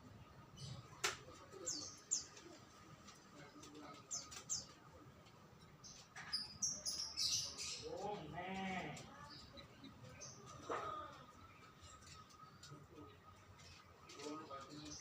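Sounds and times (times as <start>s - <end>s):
small bird chirping: 5.6s - 7.9s.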